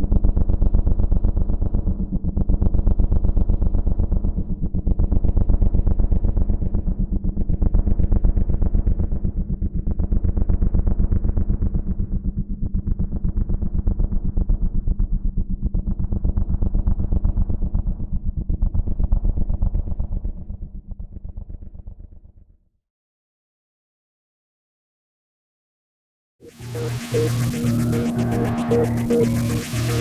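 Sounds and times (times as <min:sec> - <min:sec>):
low pulsing drone: 0:26.4 - 0:30.0.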